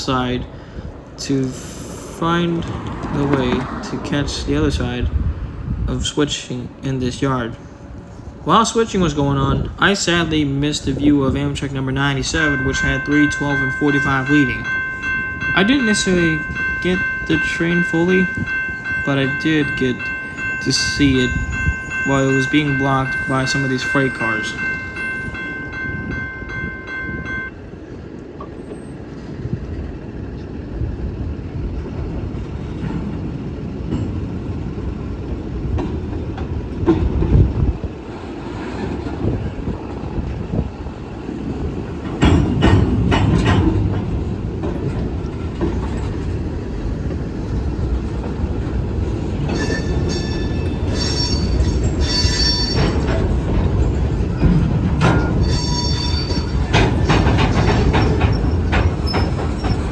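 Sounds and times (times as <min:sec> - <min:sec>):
train wheels rumbling on rail: 0:00.0 - 0:59.9
held tone: 0:12.2 - 0:27.6
freight car clanks and knocks: 0:35.7 - 0:37.8, 0:41.7 - 0:59.9
wheels squealing: 0:43.0 - 0:59.9.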